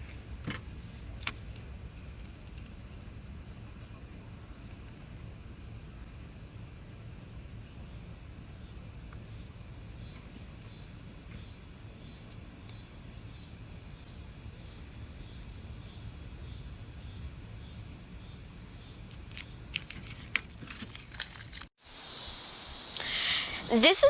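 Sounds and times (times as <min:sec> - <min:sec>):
low outdoor rumble: 0:00.0 - 0:21.4
high-pitched insect call: 0:07.0 - 0:24.0.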